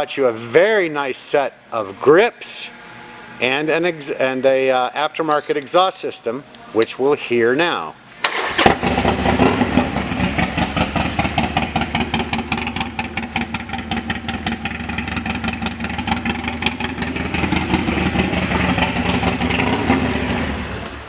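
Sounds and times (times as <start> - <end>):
loud motorcycle engine idling: 8.7 - 21.0.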